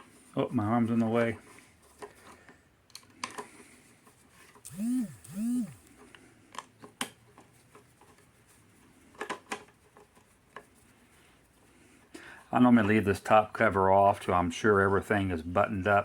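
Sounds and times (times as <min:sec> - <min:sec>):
power drill whining: 0:04.7 - 0:05.9.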